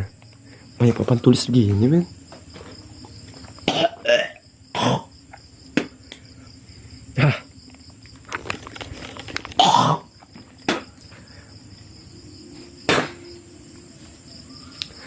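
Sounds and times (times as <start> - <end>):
crickets chirring: 0.0 - 15.0
man coughing and spitting: 3.6 - 5.1.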